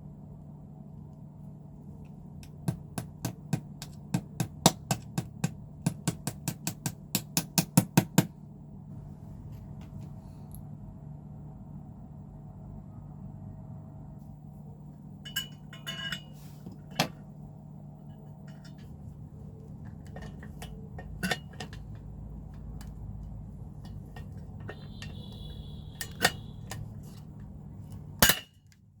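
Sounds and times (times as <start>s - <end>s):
steady low hum: 0.0s - 29.0s
metal tools clinking: 15.3s - 16.4s.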